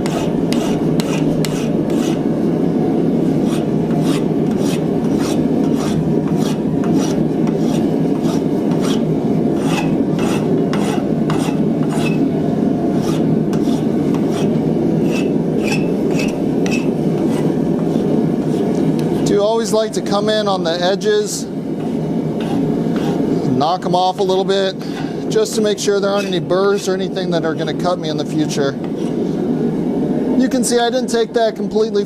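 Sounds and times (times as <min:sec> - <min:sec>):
hand file rasping on steel: 0:00.0 - 0:02.2, 0:03.3 - 0:12.2, 0:13.0 - 0:19.3, 0:21.8 - 0:23.2.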